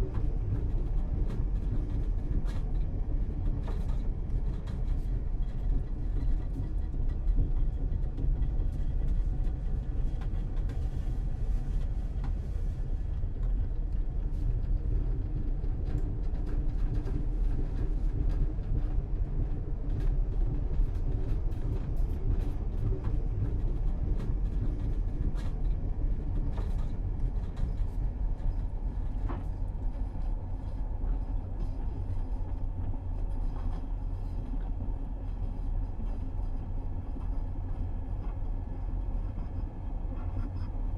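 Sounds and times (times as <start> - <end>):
train interior rumble: 0.0 - 40.9.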